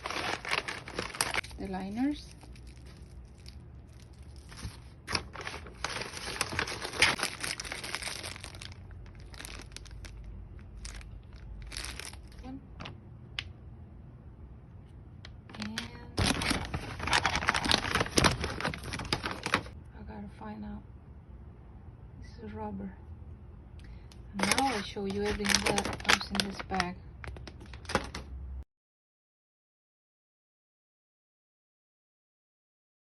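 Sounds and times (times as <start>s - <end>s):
plastic packaging crinkling: 0.0s - 12.5s, 15.5s - 19.8s, 24.4s - 28.2s.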